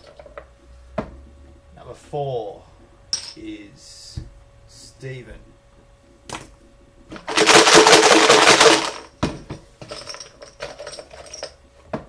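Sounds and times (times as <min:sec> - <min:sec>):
hard pieces rattling in a container: 0:07.2 - 0:09.1.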